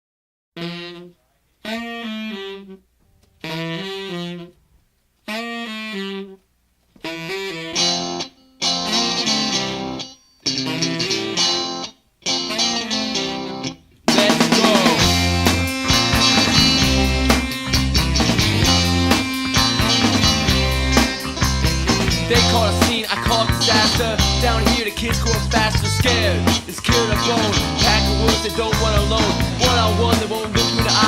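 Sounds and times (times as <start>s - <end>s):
lead instrument phrases: 0.6s - 4.6s, 7.0s - 31.0s
rock band playing: 7.7s - 31.0s.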